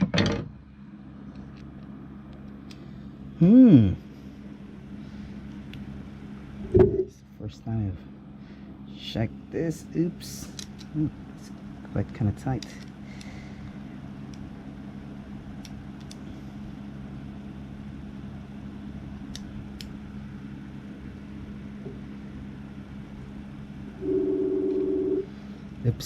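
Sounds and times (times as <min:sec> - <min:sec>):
fan humming: 0:00.0 - 0:26.0
phone buzzing: 0:24.0 - 0:25.3.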